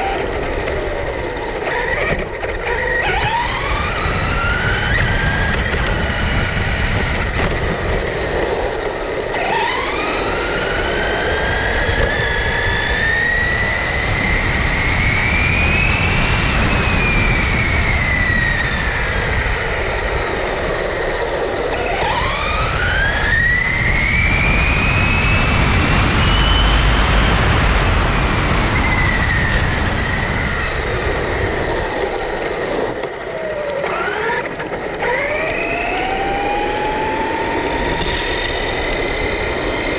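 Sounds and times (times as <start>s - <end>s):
electric motor whining: 0.0s - 39.9s
tyre and wind rush: 22.5s - 33.6s.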